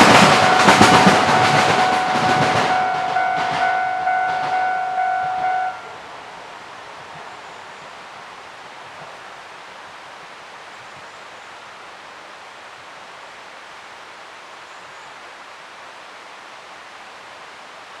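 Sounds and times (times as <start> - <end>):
outdoor rushing noise: 0.0 - 7.6.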